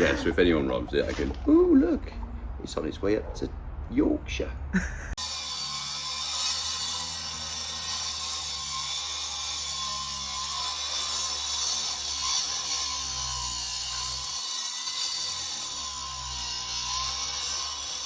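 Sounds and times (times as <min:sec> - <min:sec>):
angle grinder running: 0:05.2 - 0:18.0.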